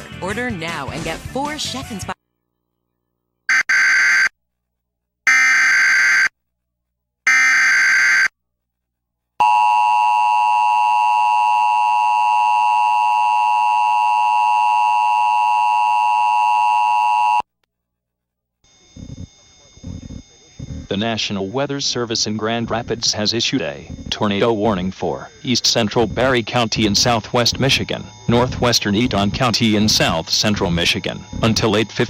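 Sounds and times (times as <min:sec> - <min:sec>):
harsh two-tone attention signal: 0:03.5 - 0:04.3, 0:18.7 - 0:32.0
warbling digital data tones: 0:18.7 - 0:32.0.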